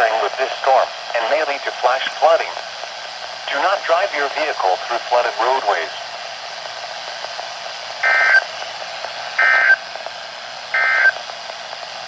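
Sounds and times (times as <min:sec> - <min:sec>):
radio hiss: 0:00.0 - 0:12.0
two-tone digital data bursts: 0:08.0 - 0:08.4, 0:09.4 - 0:09.8, 0:10.8 - 0:11.2.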